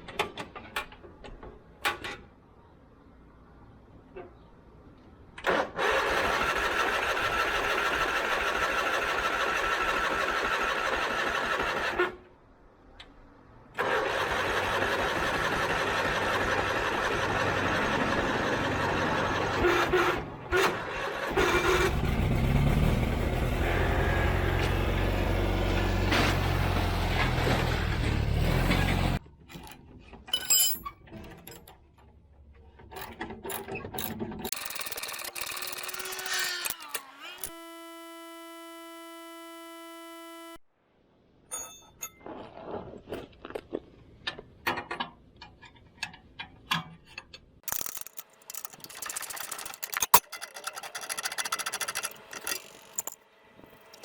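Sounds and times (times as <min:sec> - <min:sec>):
starter cranking engine: 0:13.8 - 0:24.3, 0:34.5 - 0:37.6, 0:47.6 - 0:53.2.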